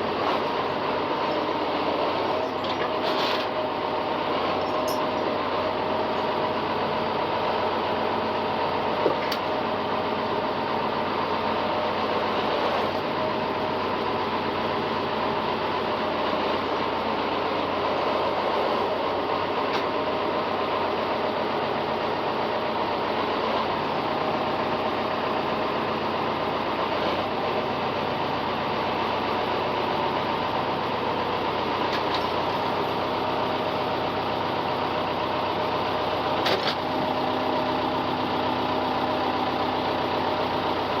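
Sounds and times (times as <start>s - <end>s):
engine running: 0.0s - 41.0s.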